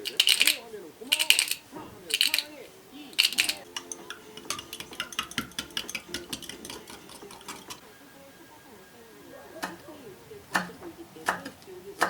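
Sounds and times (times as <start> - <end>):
utensil clinking against dish: 0.0 - 2.5, 3.2 - 7.9.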